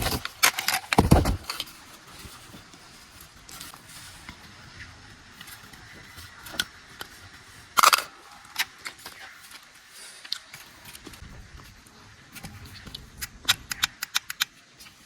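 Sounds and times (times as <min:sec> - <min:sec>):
small clicks and handling noises: 0:07.8 - 0:15.0.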